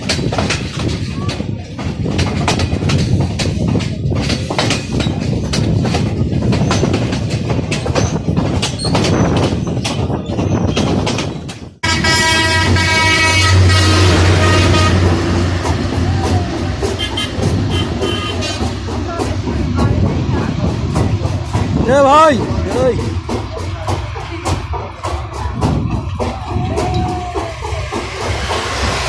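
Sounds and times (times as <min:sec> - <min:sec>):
rail clicks: 0:00.0 - 0:29.0
train rumbling and rattling: 0:00.0 - 0:29.0
train horn blast: 0:11.8 - 0:15.6, 0:16.8 - 0:18.7.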